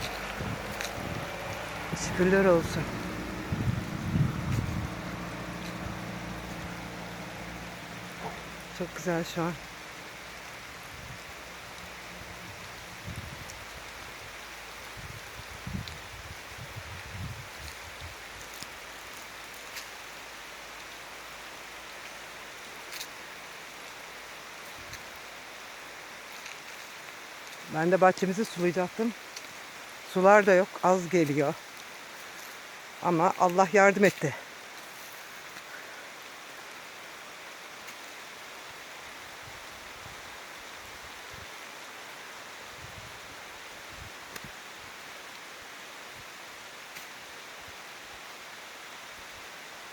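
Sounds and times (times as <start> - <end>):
heavy rain falling: 0.0 - 49.9.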